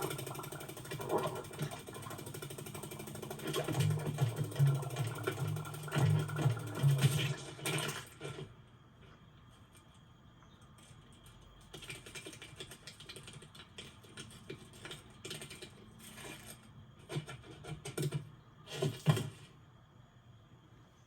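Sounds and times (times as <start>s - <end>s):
rapid small clicks and taps: 10.7s - 15.9s.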